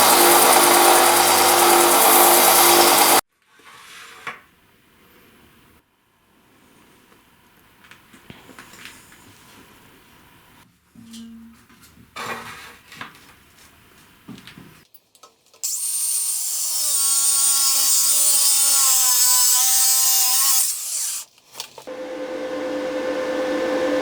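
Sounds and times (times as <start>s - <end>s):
motor humming: 0.0s - 3.2s, 21.9s - 24.0s
power tool grinding: 0.0s - 3.2s, 15.7s - 21.2s, 21.9s - 24.0s.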